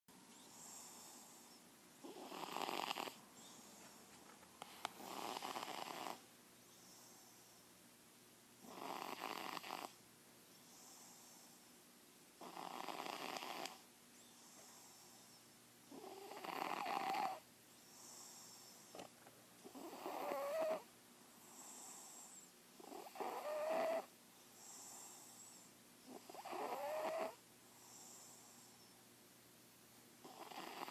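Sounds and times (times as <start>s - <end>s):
cat snoring: 0.4s - 3.6s, 5.0s - 6.2s, 8.6s - 10.0s, 12.4s - 13.8s, 15.9s - 20.9s, 21.5s - 28.7s, 30.2s - 30.9s.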